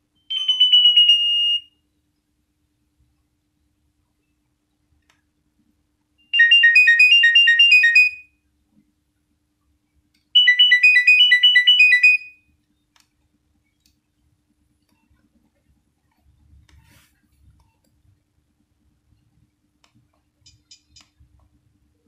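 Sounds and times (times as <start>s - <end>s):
mobile phone ringtone trill: 0.3s - 1.6s, 6.4s - 8.2s, 10.4s - 12.3s.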